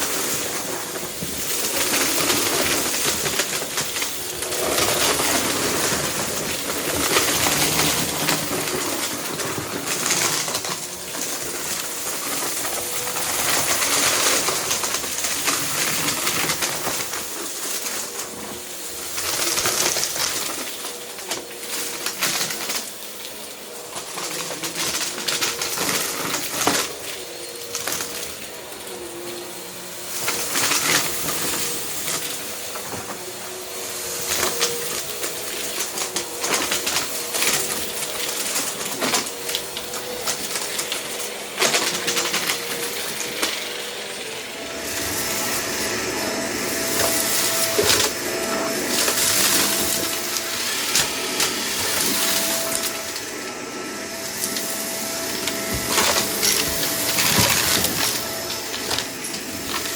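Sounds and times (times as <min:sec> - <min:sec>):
vacuum cleaner running: 0:00.0 - 0:59.9
debris clicking and rattling: 0:46.7 - 0:53.3, 0:54.3 - 0:59.9.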